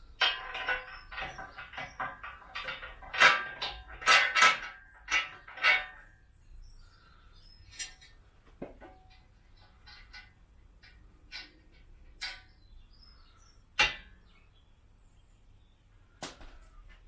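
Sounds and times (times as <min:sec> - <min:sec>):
metal parts and tools clinking: 0:00.2 - 0:06.1, 0:07.6 - 0:12.6.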